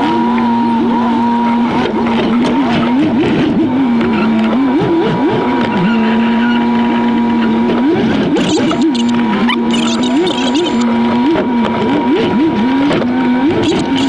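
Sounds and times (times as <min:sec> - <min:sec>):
sped-up engine drone revving: 0:08.3 - 0:10.9, 0:13.6 - 0:14.0.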